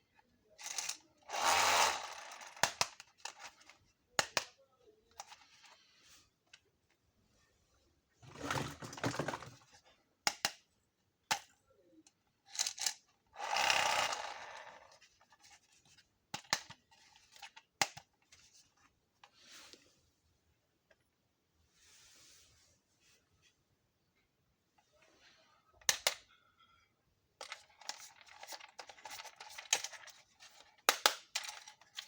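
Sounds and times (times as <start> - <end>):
plastic pieces clicking: 0.6 - 4.5, 12.5 - 14.9, 25.8 - 26.2, 27.4 - 32.0.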